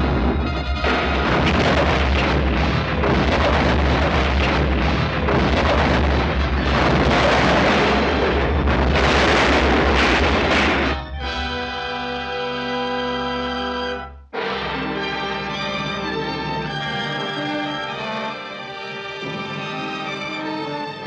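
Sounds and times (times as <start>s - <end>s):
collapsing rock: 0.0s - 11.1s
loud rumbling and crashing: 0.0s - 11.6s.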